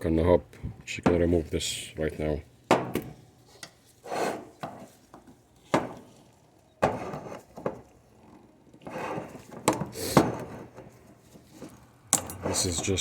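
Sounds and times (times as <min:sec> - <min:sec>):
metal scraping: 0:08.8 - 0:13.0.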